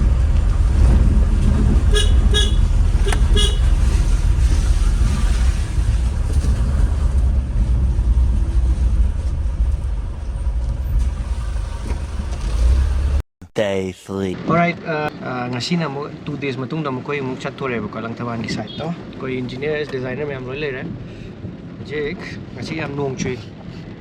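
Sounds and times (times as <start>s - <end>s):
traffic engines rumbling: 0.0s - 14.5s
vehicle horn toots: 1.9s - 3.9s.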